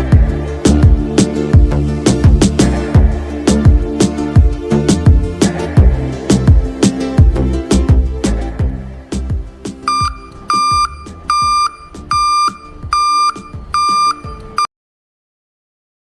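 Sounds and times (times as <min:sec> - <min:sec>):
background music with a beat: 0:00.0 - 0:14.7
fire alarm beeping: 0:09.9 - 0:14.6.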